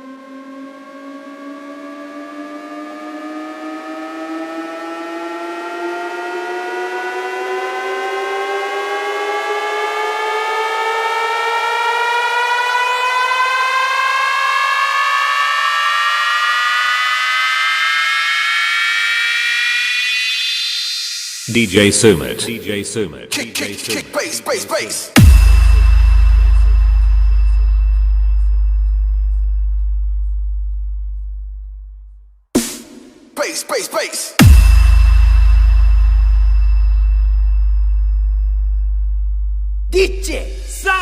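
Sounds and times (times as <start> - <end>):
rising siren wail: 0.0 - 21.5, 25.2 - 31.7, 34.4 - 41.0.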